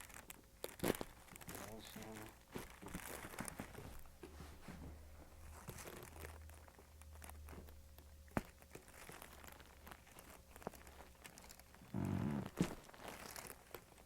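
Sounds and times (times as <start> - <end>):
rustling and shuffling on table: 2.1 - 6.7.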